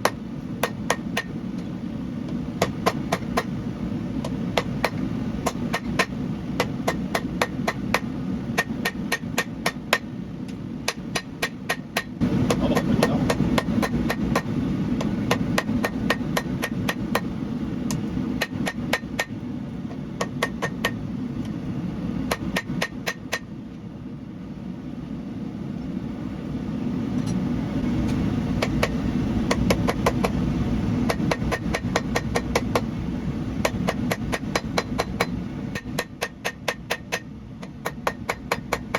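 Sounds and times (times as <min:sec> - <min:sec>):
hammer striking steel on anvil: 0:00.0 - 0:01.4, 0:02.6 - 0:03.5, 0:04.2 - 0:10.1, 0:10.8 - 0:17.3, 0:18.4 - 0:19.4, 0:20.2 - 0:21.0, 0:22.3 - 0:23.5, 0:28.6 - 0:30.4, 0:31.1 - 0:32.9, 0:33.6 - 0:38.9
steady low rumble: 0:00.0 - 0:38.9.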